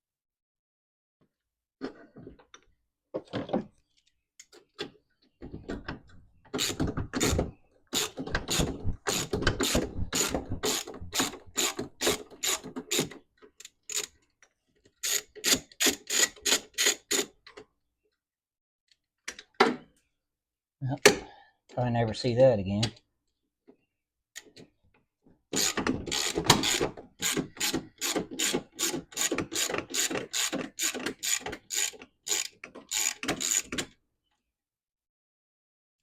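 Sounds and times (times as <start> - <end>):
ratchet wrench clicking: 25.6 - 33.7.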